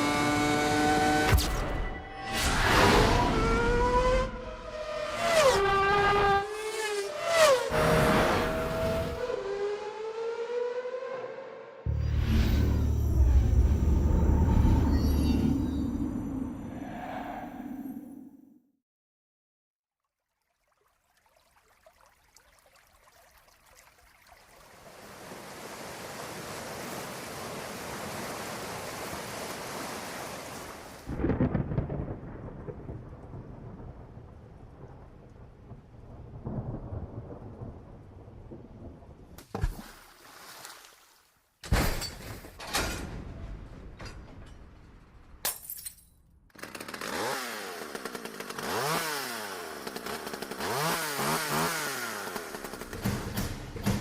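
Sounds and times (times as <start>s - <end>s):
thunderclap rumbling: 31.1s - 39.4s
chainsaw revving: 46.5s - 53.6s.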